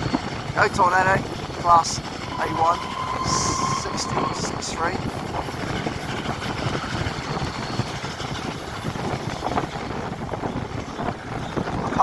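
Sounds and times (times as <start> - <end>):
rail noise: 0.0 - 12.0
steam locomotive exhaust: 1.8 - 8.2.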